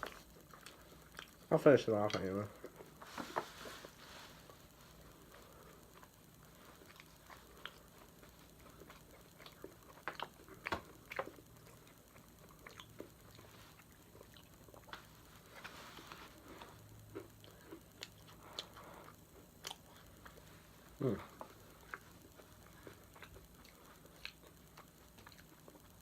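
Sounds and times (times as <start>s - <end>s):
soft chewing: 0.0s - 26.0s.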